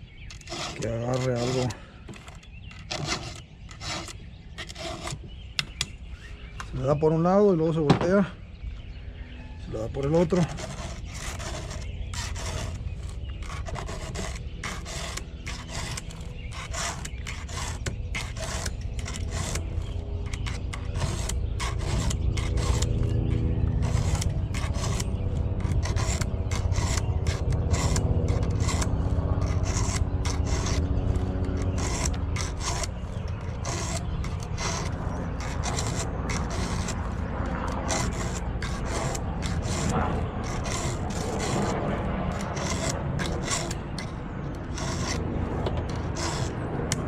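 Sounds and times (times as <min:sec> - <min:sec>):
file rasping on chainsaw chain: 0:00.2 - 0:05.9, 0:09.8 - 0:47.0.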